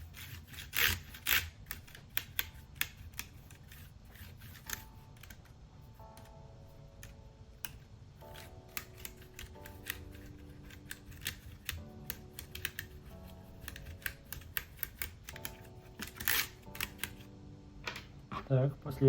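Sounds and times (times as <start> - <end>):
brush scrubbing keyboard: 0.0 - 6.3
soft background music: 0.0 - 19.0.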